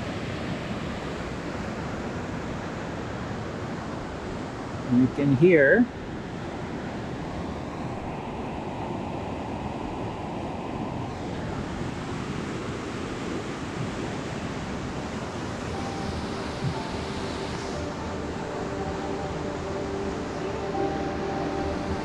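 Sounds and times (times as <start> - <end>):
river rushing over rocks: 0.0 - 22.0.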